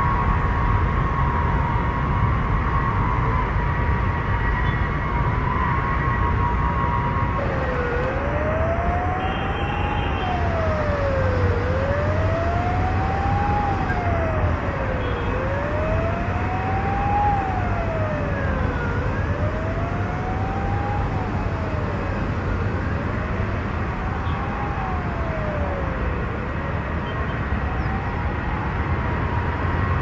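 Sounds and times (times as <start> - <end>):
siren wailing: 0.0 - 30.0.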